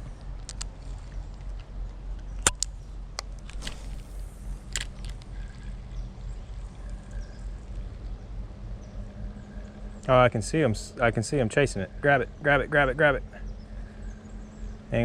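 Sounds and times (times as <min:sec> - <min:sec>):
sharp clicks: 0:00.0 - 0:08.2
distant road traffic rumble: 0:00.0 - 0:15.0.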